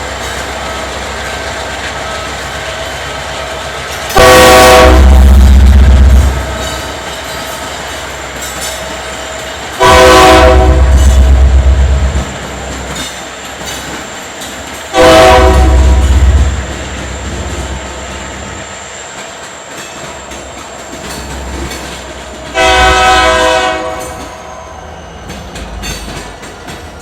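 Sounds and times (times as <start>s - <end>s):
moving train rumble: 0.0s - 27.0s
locomotive air horn blasts: 4.2s - 5.4s, 9.8s - 11.0s, 14.9s - 16.4s, 22.5s - 24.2s.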